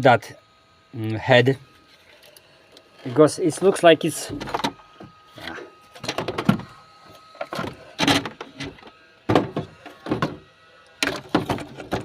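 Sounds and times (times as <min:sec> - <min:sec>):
metal knocking and scraping: 0:07.4 - 0:10.4, 0:11.0 - 0:12.0.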